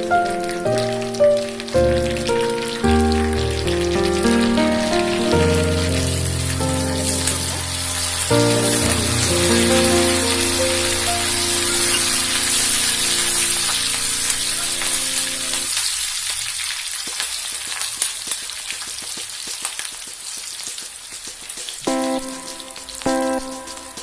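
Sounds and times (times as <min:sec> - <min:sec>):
background music: 0:00.0 - 0:15.7, 0:21.9 - 0:24.0
hot oil sizzling and popping: 0:00.0 - 0:24.0.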